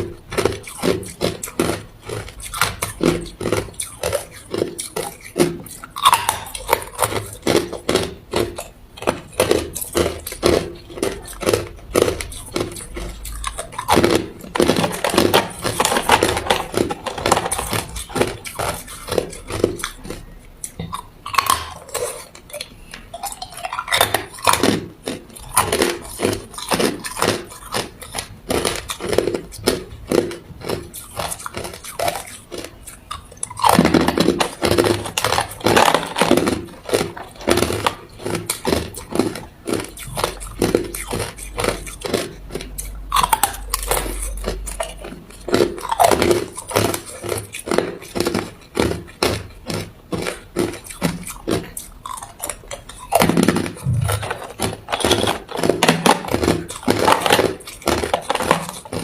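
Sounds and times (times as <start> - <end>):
ice being chewed: 0.0 - 59.0.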